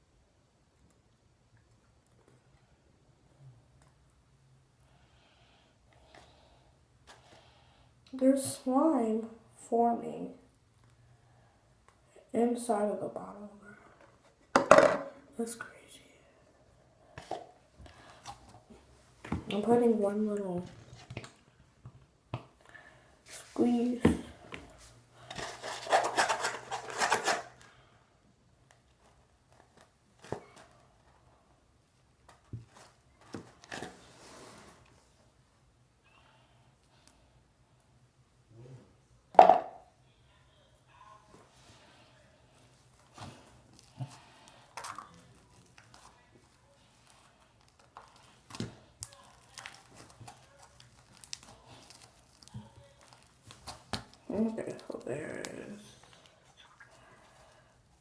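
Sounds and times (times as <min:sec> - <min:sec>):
slime clicking and squelching: 0:47.6 - 0:55.6
plastic bottle crinkling: 0:47.6 - 0:57.5.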